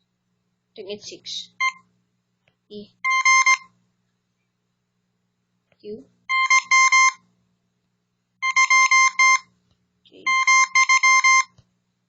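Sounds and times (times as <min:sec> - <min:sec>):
morse code beeps: 0:01.5 - 0:01.9, 0:03.0 - 0:03.7, 0:06.3 - 0:07.2, 0:08.4 - 0:09.5, 0:10.2 - 0:11.6.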